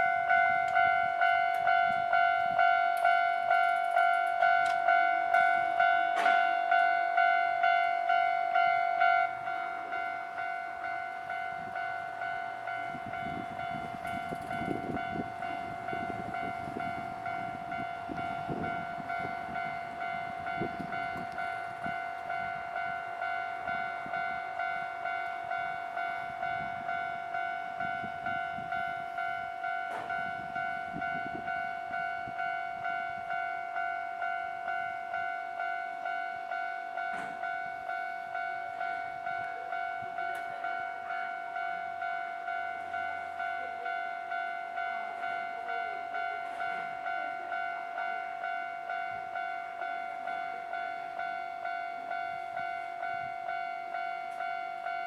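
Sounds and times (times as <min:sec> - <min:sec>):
train wheels clattering on rails: 0:00.0 - 0:06.9, 0:11.1 - 0:33.5, 0:37.0 - 0:39.4
level crossing warning bell: 0:00.0 - 0:55.0.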